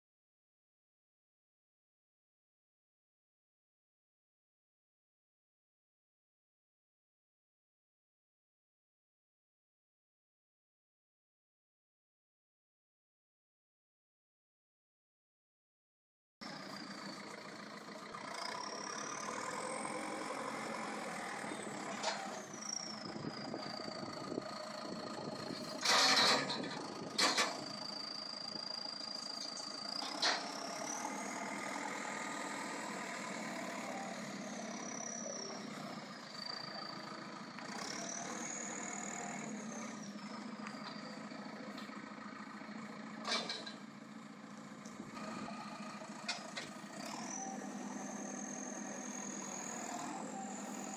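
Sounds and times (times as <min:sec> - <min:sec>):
diesel engine with whine: 0:16.4 - 0:50.9.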